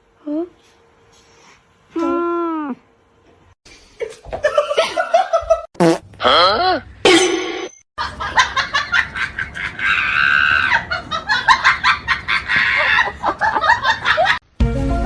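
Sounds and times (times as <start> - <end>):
people laughing: 4.0 - 5.7, 8.0 - 14.4.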